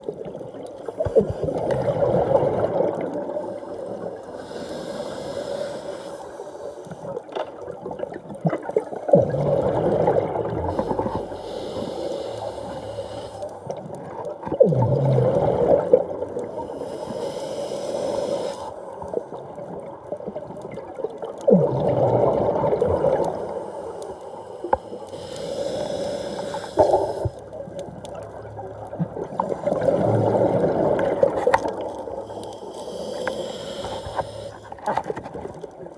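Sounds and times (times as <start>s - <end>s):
exhaled bubbles gurgling underwater: 0.0s - 35.9s
faint breathing hiss: 3.3s - 7.2s, 10.7s - 13.8s, 16.4s - 19.3s, 23.2s - 27.6s, 32.0s - 35.0s.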